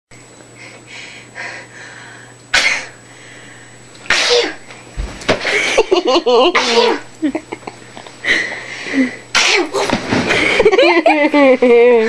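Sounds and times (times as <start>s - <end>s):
person sneezing: 2.5s - 3.0s, 4.1s - 4.6s, 6.5s - 7.1s, 9.0s - 9.9s.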